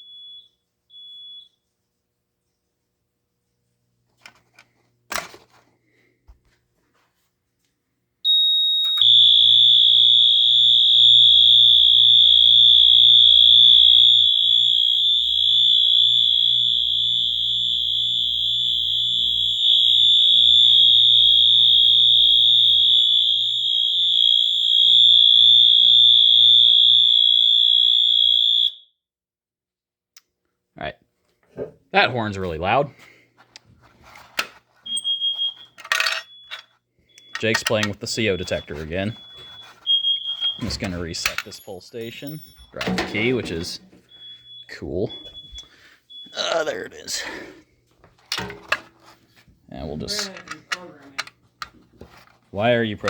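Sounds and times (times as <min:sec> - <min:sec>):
fire alarm horn tone: 0:08.2 - 0:28.9, 0:34.9 - 0:47.4, 0:52.5 - 0:53.0.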